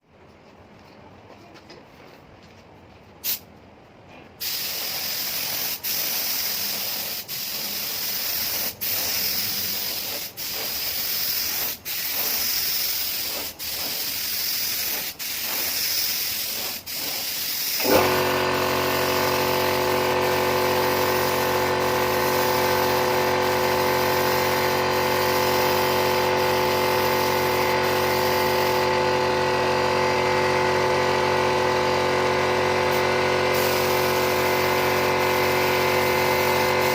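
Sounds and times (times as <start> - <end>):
loud hiss: 4.4 - 18.1, 33.5 - 36.9
machine hum with whine: 17.8 - 36.9.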